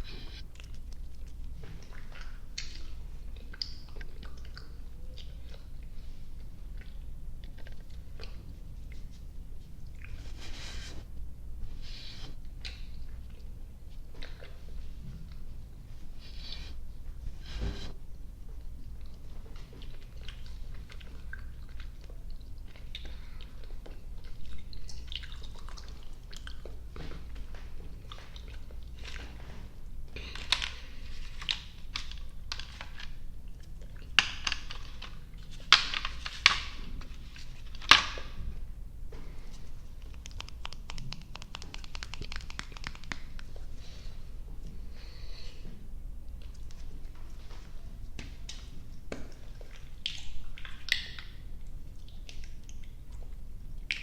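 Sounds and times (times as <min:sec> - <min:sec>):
chewing sticky candy: 0:00.1 - 0:10.5, 0:17.8 - 0:29.4, 0:39.6 - 0:44.0, 0:48.5 - 0:54.0
wet mouth clicks and smacks: 0:00.4 - 0:05.8, 0:39.9 - 0:43.7, 0:49.3 - 0:54.0.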